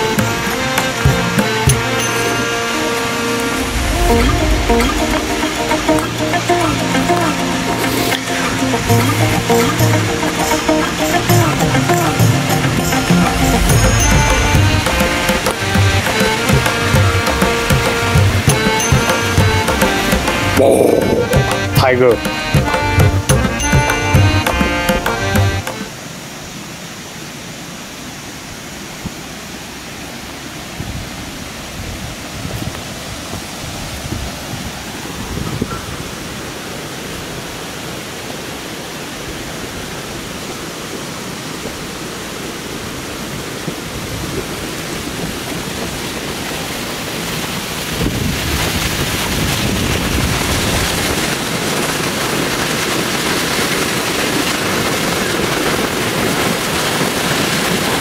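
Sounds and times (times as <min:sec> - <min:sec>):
waterfall roaring: 0:00.0 - 0:58.0
wind rumble on microphone: 0:03.6 - 0:06.0, 0:30.7 - 0:36.4, 0:47.6 - 0:58.0.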